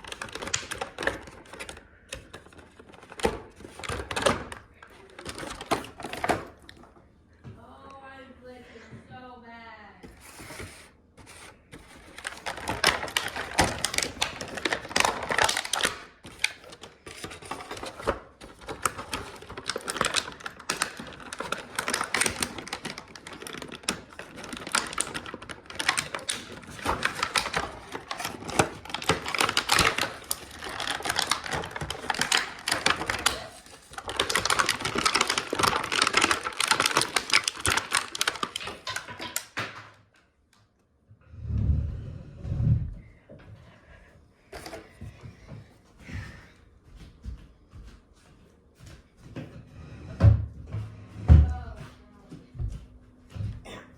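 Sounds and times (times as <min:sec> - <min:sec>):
plastic and cardboard crackling: 0:00.0 - 0:06.9, 0:10.0 - 0:39.8.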